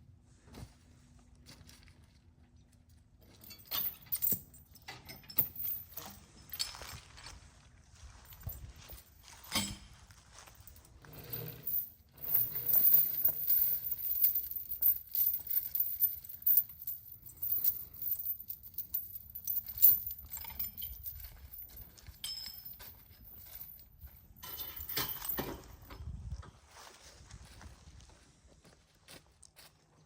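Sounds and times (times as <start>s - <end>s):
metal chains jangling: 3.2s - 7.4s, 8.1s - 26.0s.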